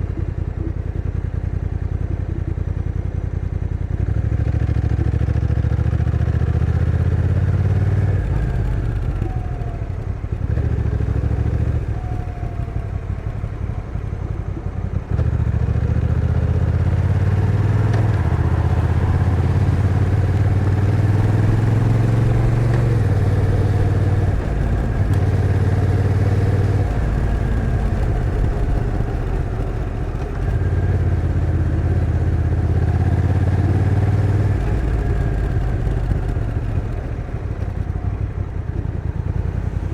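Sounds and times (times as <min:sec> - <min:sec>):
motorcycle engine running: 0:00.0 - 0:39.9
gear changes: 0:06.2 - 0:39.9.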